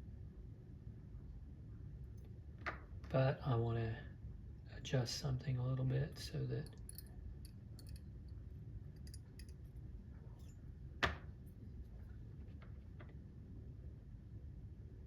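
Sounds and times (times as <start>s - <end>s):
low steady hum: 0.0s - 15.0s
metal tools clicking on clock parts: 6.6s - 8.0s.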